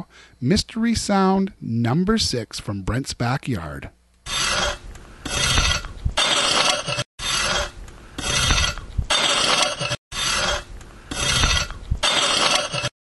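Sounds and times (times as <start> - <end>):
rough rasping scraping: 4.2 - 13.0.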